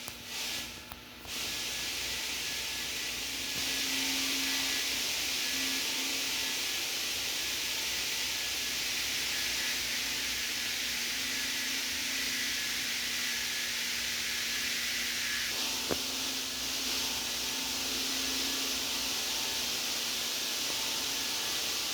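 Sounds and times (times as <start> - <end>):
radio static hiss: 15.5 - 21.9.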